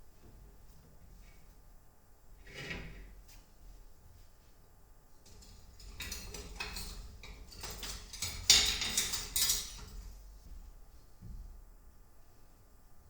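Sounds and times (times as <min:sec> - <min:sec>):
dishes scraping and clinking: 0:05.3 - 0:10.1.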